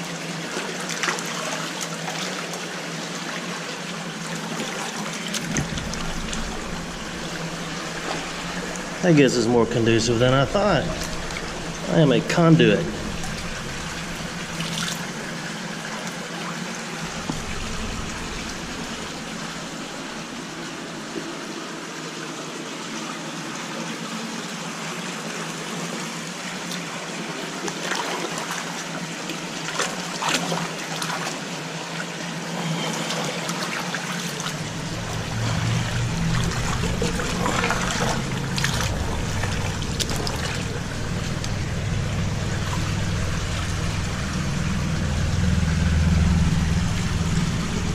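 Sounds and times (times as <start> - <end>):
creek water trickling: 0.0 - 47.9
low rumble: 5.3 - 15.9, 17.0 - 21.4, 34.5 - 47.9.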